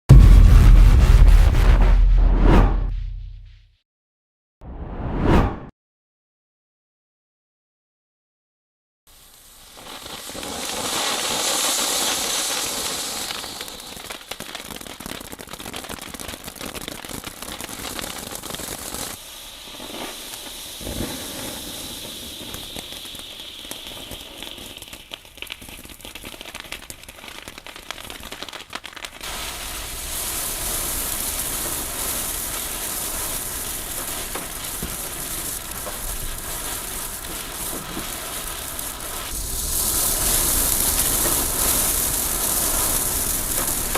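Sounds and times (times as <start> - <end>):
firework fountains hissing and crackling: 9.1 - 43.9.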